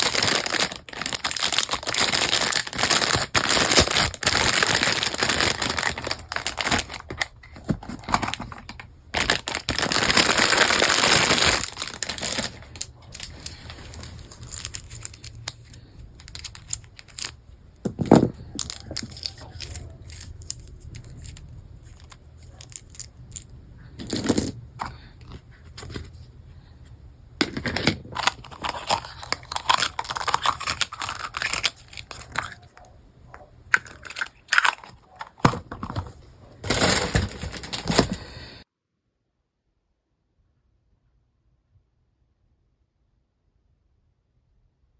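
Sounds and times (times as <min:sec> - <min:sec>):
plastic packaging crinkling and tearing: 0:00.0 - 0:17.4, 0:18.2 - 0:23.4, 0:28.1 - 0:32.8, 0:33.7 - 0:38.3
plastic pieces knocking: 0:00.0 - 0:23.4, 0:27.4 - 0:32.7, 0:33.7 - 0:38.2.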